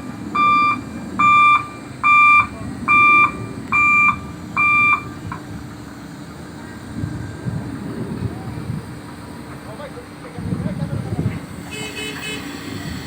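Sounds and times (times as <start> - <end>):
low engine rumble: 0.0 - 13.0
crane warning beeps: 0.1 - 5.4.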